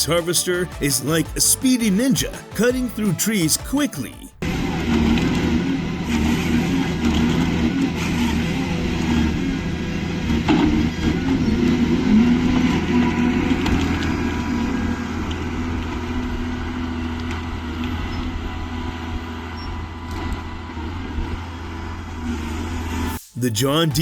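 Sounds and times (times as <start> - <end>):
diesel engine running: 4.4 - 23.0.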